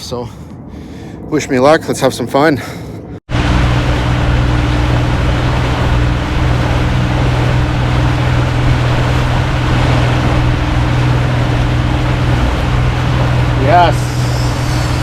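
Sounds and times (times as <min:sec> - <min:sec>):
wind: 0:00.0 - 0:15.0
motorboat engine humming: 0:03.0 - 0:15.0
water rushing past hull: 0:03.3 - 0:15.0.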